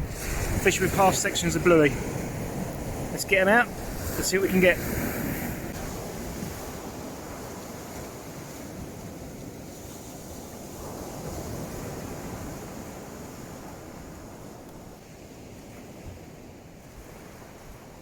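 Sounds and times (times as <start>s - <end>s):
sea waves washing on beach: 0.0s - 18.0s
wind buffeting microphone: 0.0s - 18.0s.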